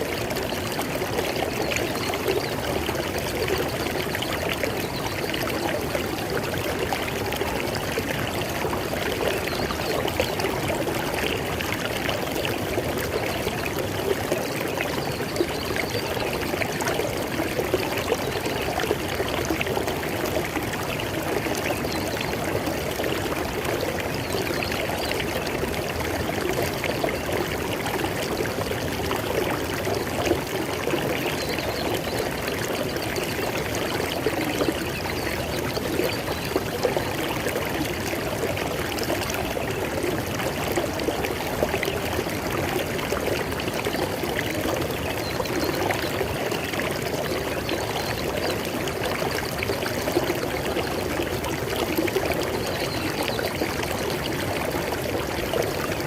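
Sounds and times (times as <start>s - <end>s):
river water flowing over rocks: 0.0s - 56.0s.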